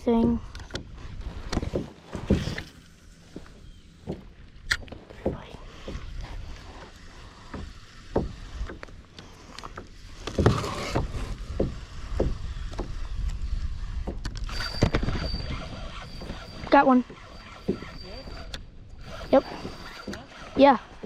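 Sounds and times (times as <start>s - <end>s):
thin steady high tone: 14.5s - 21.0s.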